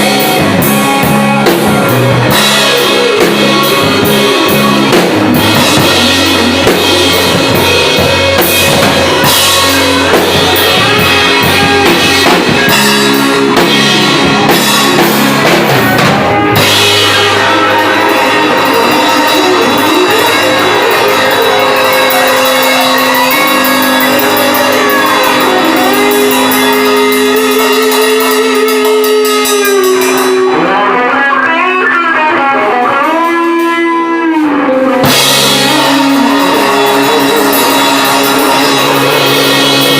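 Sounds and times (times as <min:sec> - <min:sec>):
cymbals: 0:00.0 - 0:30.8, 0:35.0 - 0:39.9
drum kit: 0:00.0 - 0:39.9
electric guitar: 0:00.0 - 0:39.9.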